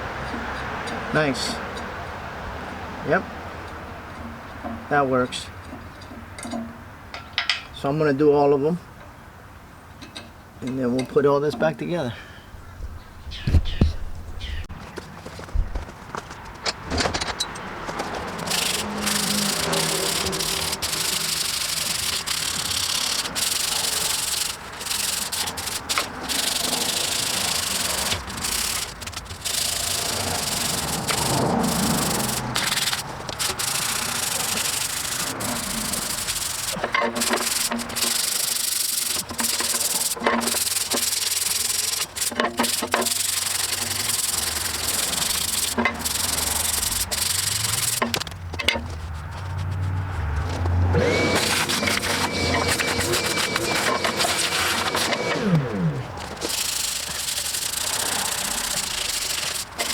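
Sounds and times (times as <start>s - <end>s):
scraping bolt threads: 16.7s - 59.9s.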